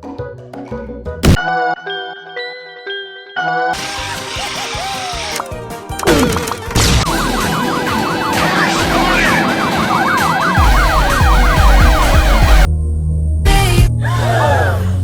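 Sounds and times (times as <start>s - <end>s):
sirens yelping: 6.9s - 12.7s
heavy bass: 10.6s - 15.0s.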